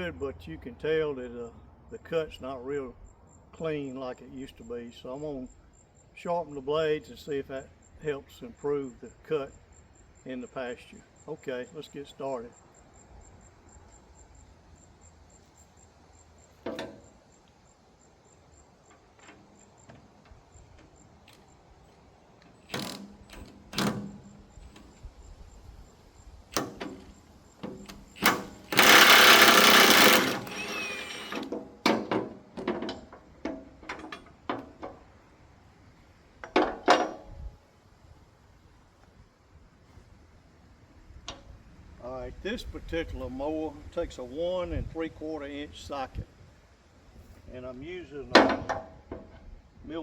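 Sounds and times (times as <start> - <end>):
impact wrench hammering: 28.2 - 31.5.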